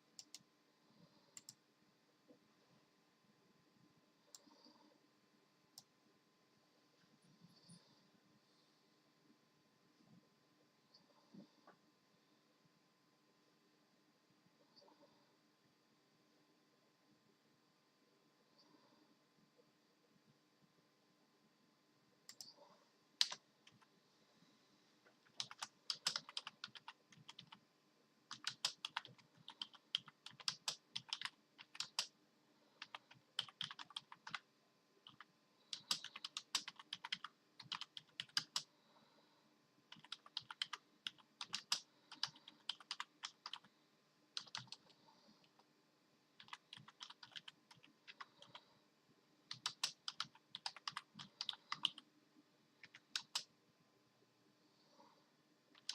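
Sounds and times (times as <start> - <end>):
keyboard keys clicking: 25.2 - 27.6, 28.3 - 32.1, 32.8 - 34.4, 35.0 - 38.7, 39.9 - 43.7, 44.4 - 45.6, 46.4 - 48.6, 49.5 - 52.0, 52.8 - 53.5.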